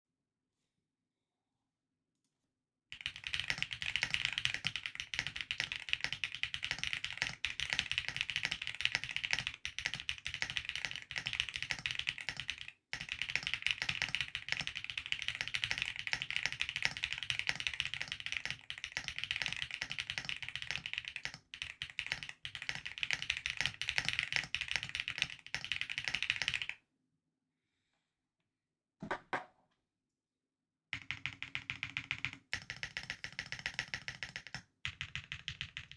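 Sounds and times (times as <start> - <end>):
fast typing on mechanical keyboard: 3.0 - 26.8, 31.0 - 35.9.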